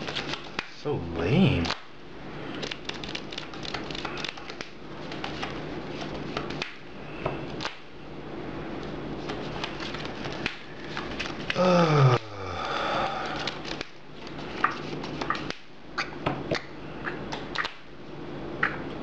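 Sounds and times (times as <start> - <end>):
steady low hum: 0.0 - 19.0
trading cards clicking and tapping: 2.6 - 7.8, 13.3 - 15.7.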